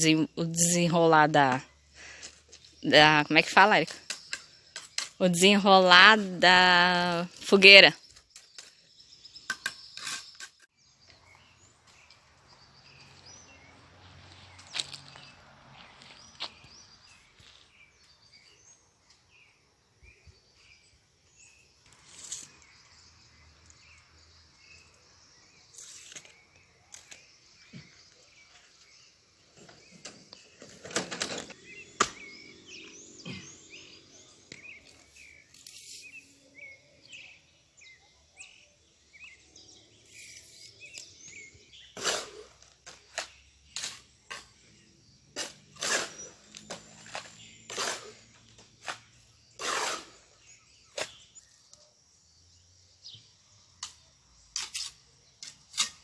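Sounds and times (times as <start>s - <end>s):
small birds chirping: 0.0s - 56.0s
sharp knocks and scrapes: 3.7s - 5.2s, 9.4s - 10.7s, 25.7s - 27.9s, 41.9s - 44.6s, 45.4s - 51.3s, 53.8s - 56.0s.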